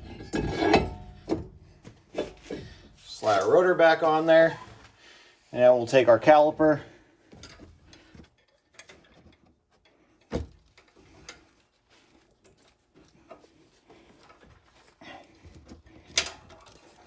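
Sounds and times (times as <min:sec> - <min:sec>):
metal parts clicking and knocking: 0:07.3 - 0:11.5, 0:16.0 - 0:17.0.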